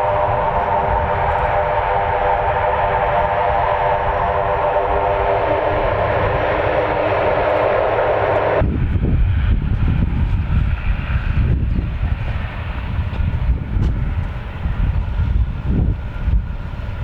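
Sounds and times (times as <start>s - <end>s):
jet engines whining: 0.0s - 17.0s
low uneven rumble: 0.0s - 17.0s.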